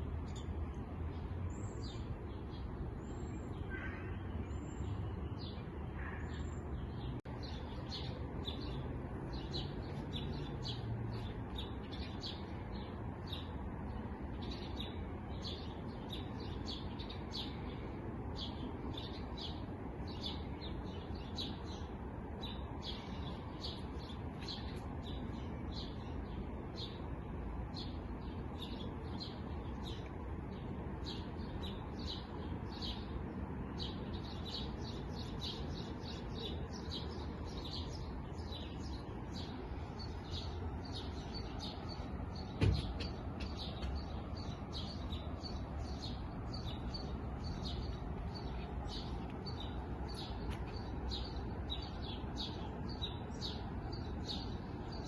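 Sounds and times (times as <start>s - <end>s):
small songbirds chirping: 0.0s - 55.0s
sharp thump: 42.5s - 43.6s.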